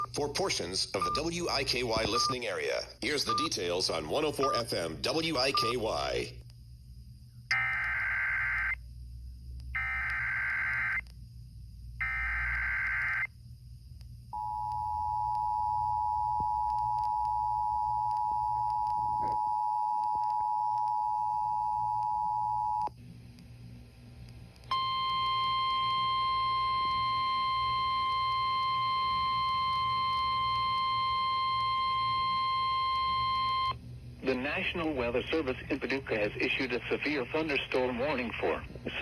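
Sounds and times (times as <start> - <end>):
screeching data bursts: 7.5 - 8.8, 9.8 - 11.0
single steady alarm tone: 14.3 - 22.9, 24.7 - 33.8.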